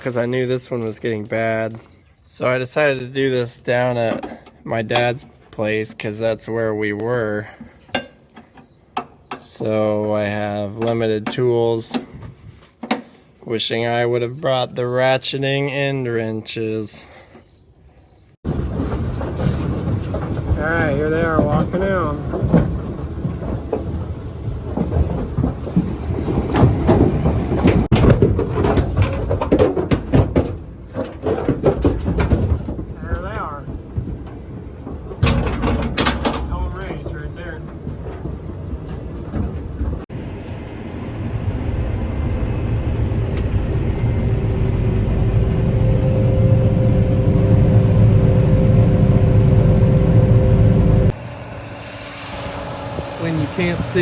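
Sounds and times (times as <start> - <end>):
hooves knocking on trailer floor: 18.5 - 40.0
low rumble: 39.7 - 54.0
steady hum: 40.1 - 54.0.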